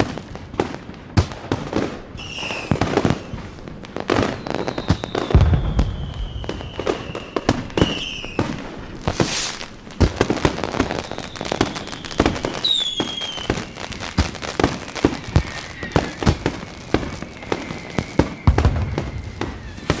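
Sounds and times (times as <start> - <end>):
falling firework whistles: 0.0 - 20.0
firecrackers banging and popping: 0.0 - 20.0
short hissing burst: 9.0 - 9.8.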